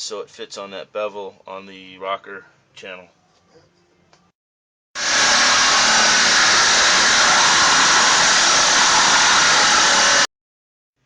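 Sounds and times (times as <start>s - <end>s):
power saw cutting steel tube: 5.0s - 10.3s.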